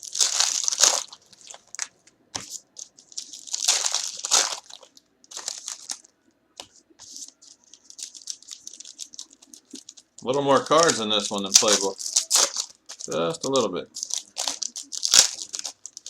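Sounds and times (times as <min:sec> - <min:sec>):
wrapper crinkling and tearing: 0:00.0 - 0:06.1, 0:07.0 - 0:16.0
cards rustling and ticking: 0:00.0 - 0:16.0.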